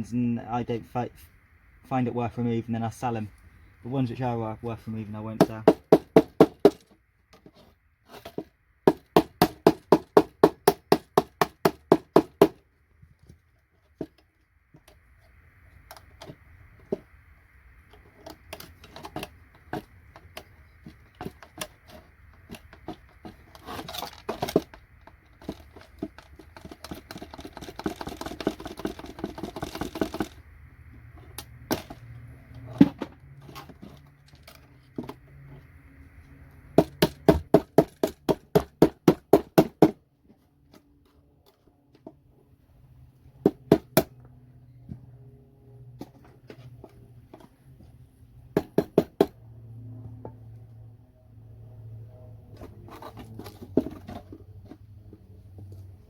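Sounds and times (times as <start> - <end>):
hammer tapping on metal scraper: 36.8 - 40.0
scraping and clattering: 52.5 - 56.0.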